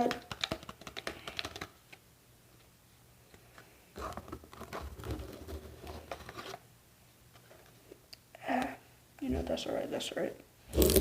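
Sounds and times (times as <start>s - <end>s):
powder rustling and scraping: 10.7s - 11.0s.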